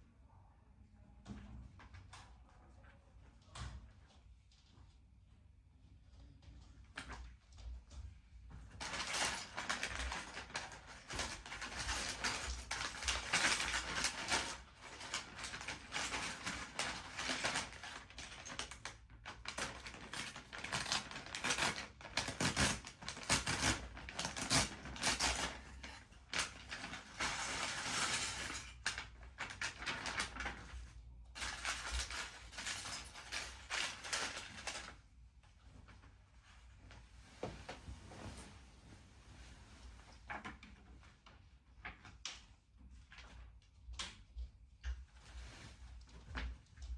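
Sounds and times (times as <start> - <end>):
plastic packaging rustling: 8.8 - 35.1.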